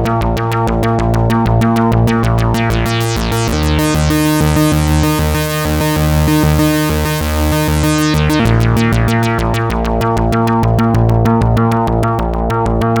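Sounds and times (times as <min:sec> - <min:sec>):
synthesizer bass line: 0:00.2 - 0:12.1
short synth notes with filter sweep: 0:01.1 - 0:11.6
bright sustained synth part: 0:02.1 - 0:10.0.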